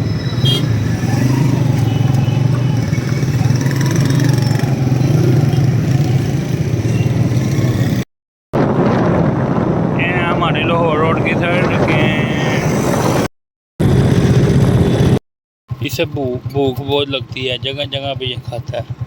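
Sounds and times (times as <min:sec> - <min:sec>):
wind: 0:00.0 - 0:08.0, 0:08.6 - 0:19.0
road noise: 0:00.0 - 0:19.0
motorcycle engine running: 0:00.4 - 0:08.0, 0:13.8 - 0:19.0.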